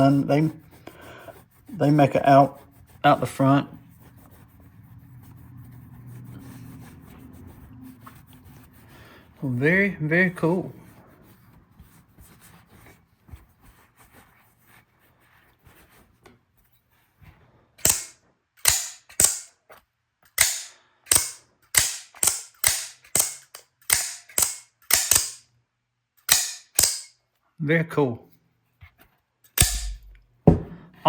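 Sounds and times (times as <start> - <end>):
knife blade snapping open and shut: 20.3 - 25.4, 26.3 - 27.1, 29.6 - 30.2.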